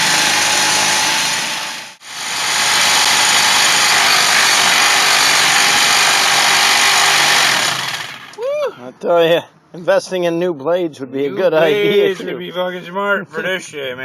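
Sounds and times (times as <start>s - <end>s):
reciprocating saw cutting steel: 0.0s - 8.4s.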